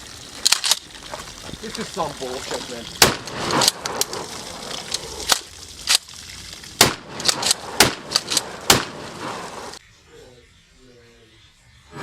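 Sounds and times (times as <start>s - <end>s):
gunshots: 3.0s - 4.3s, 6.8s - 9.8s.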